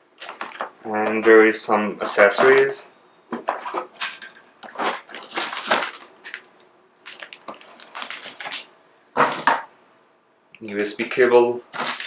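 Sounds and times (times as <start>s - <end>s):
packaging rustling and crinkling: 0.2s - 1.3s, 2.1s - 9.7s, 11.7s - 12.0s.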